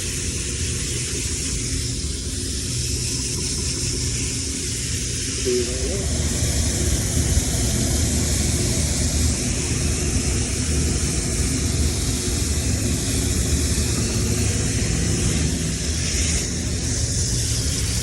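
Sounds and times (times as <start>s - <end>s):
water spraying from a hose: 0.0s - 18.0s.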